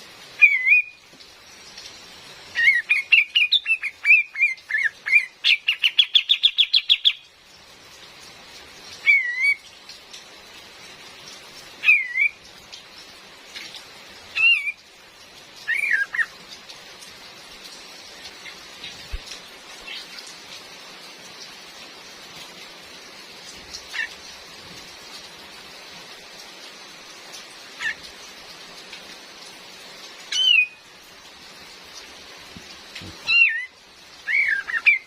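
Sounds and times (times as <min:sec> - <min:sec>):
rain hiss: 0:00.0 - 0:35.0
bird calling: 0:11.8 - 0:12.4, 0:33.3 - 0:35.0.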